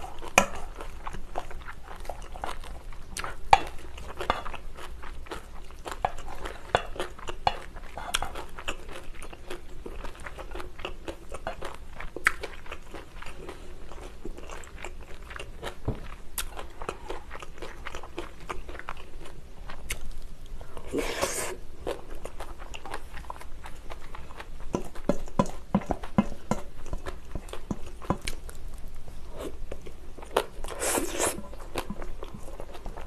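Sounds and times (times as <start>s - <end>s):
person chewing food: 0.0s - 33.0s.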